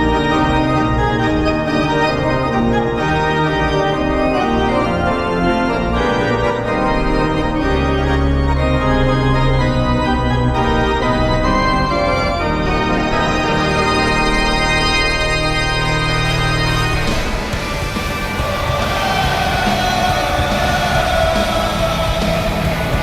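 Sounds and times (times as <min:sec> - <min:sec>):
organ playing chords: 0:00.0 - 0:23.0.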